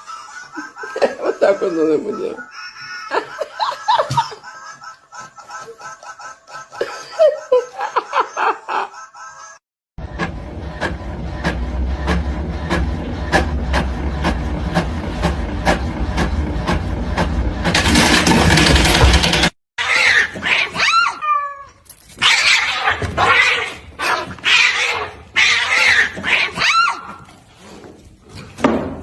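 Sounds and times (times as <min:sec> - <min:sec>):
machine running with regular clicks: 0:10.0 - 0:19.6
cat yowling: 0:19.8 - 0:27.1.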